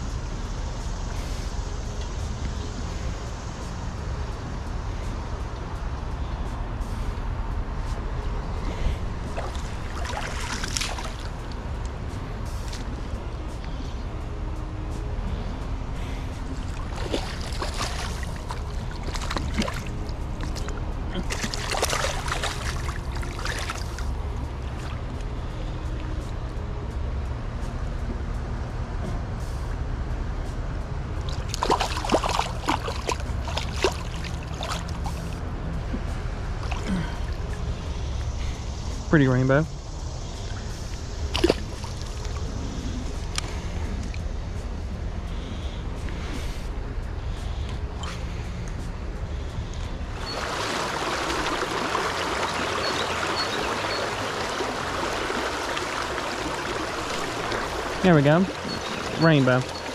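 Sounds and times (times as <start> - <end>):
river water rushing: 8.5 - 25.1, 31.2 - 35.6, 41.2 - 44.2, 49.6 - 59.9
water splashing: 8.8 - 11.6, 16.6 - 24.2, 31.2 - 37.6, 40.7 - 42.5, 50.1 - 59.9
river water rushing over rocks: 50.2 - 59.9.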